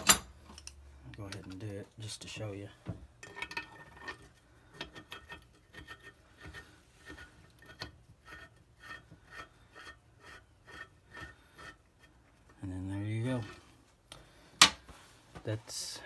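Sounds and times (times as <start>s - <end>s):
metal rasping and clicking: 3.2s - 13.7s.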